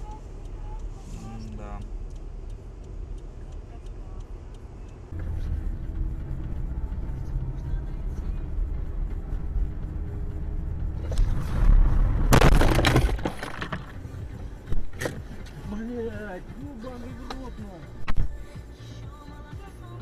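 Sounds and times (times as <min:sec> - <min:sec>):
car engine and road rumble: 0:00.0 - 0:20.0.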